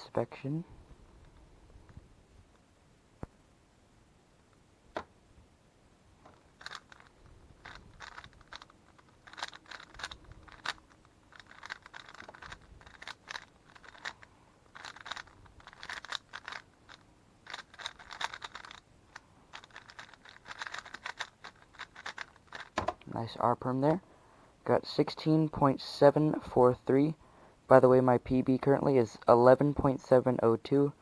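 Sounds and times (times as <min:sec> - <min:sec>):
puzzle cube plastic clicking: 0:06.2 - 0:23.1.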